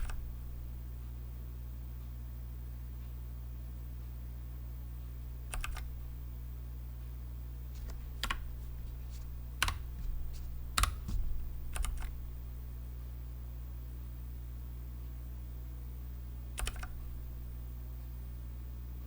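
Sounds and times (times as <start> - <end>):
mechanical keyboard key presses: 0.0 - 0.2, 5.5 - 5.9, 7.8 - 8.6, 9.6 - 12.2, 16.6 - 17.1
steady low hum: 0.0 - 19.0.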